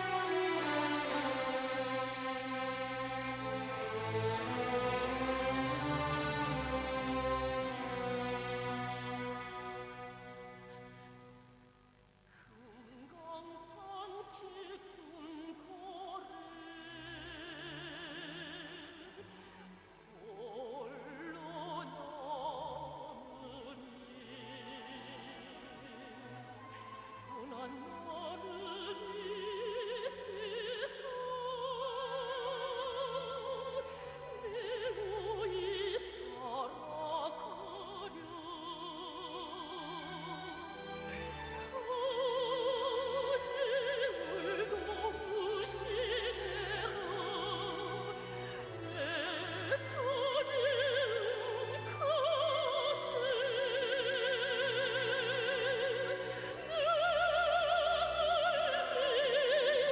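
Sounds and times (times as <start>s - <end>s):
operatic singing in a high voice: 0.0s - 11.1s, 12.5s - 59.9s
orchestra playing: 0.0s - 11.5s.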